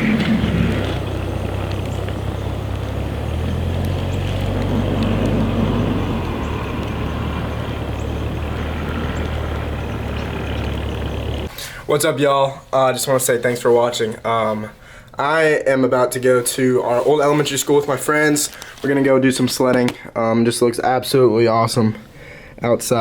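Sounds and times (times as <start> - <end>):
car engine idling: 0.0 - 11.5.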